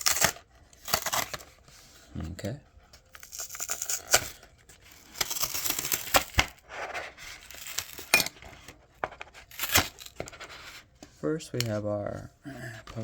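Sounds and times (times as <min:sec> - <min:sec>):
blister pack tearing and crinkling: 0:00.0 - 0:01.6, 0:03.0 - 0:08.4, 0:09.4 - 0:10.4.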